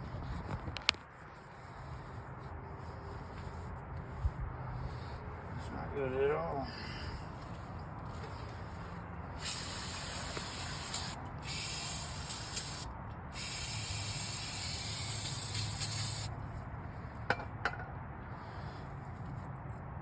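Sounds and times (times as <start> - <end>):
aerosol can spraying: 9.4 - 16.3.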